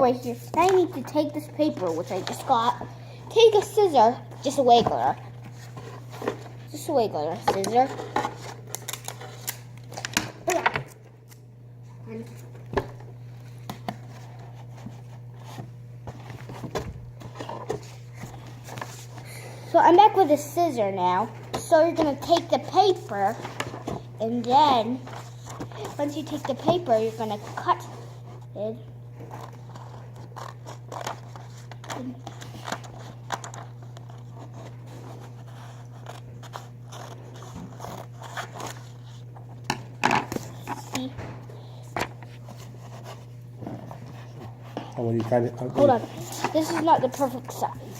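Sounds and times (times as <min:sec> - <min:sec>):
steady low hum: 0:00.0 - 0:47.9
paper rustling: 0:29.3 - 0:39.4, 0:42.0 - 0:47.9.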